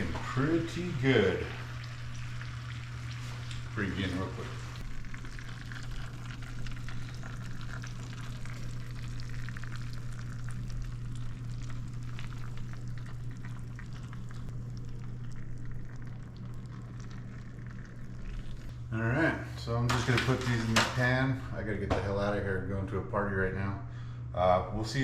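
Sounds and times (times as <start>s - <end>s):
bacon fat sizzling: 0.0s - 18.9s
constant low hum: 0.0s - 25.0s.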